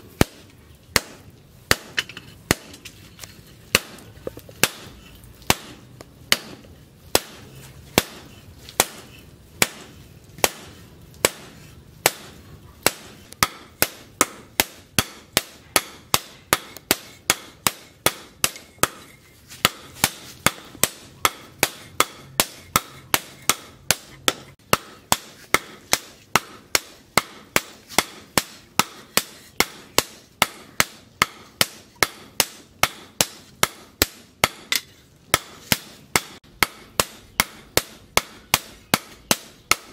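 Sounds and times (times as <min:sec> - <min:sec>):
hammer striking steel on anvil: 0:04.6 - 0:07.4, 0:08.0 - 0:39.9.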